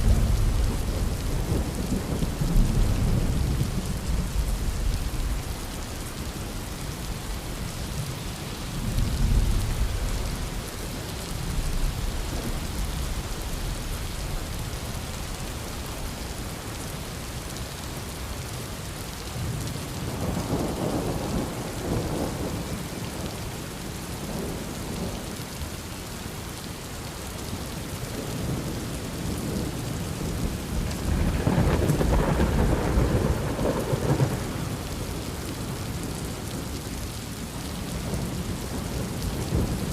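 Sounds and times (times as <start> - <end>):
rolling thunder: 30.2 - 35.2.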